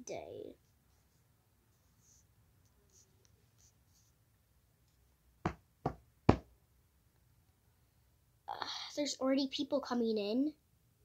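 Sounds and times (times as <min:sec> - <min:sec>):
sharp knocks on hard surface: 0:05.4 - 0:06.5.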